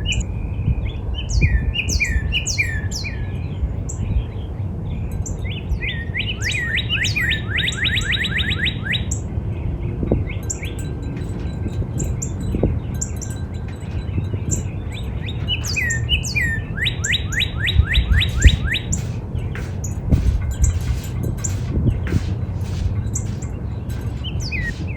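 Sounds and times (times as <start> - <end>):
bird singing whistles: 0.0 - 3.3, 5.5 - 9.3, 14.2 - 19.0, 24.2 - 24.9
steady low rumble: 9.1 - 24.9
short high bird chips: 13.0 - 24.9.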